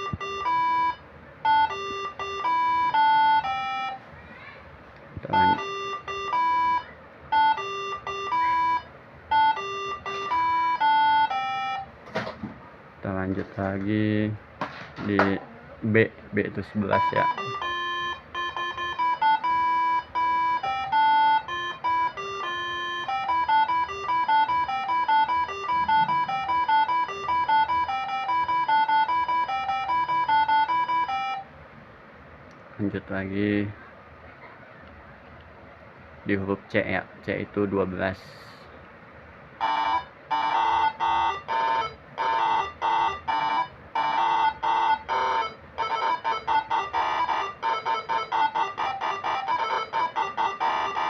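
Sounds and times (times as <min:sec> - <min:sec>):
air horn melody: 0:39.6 - 0:51.0.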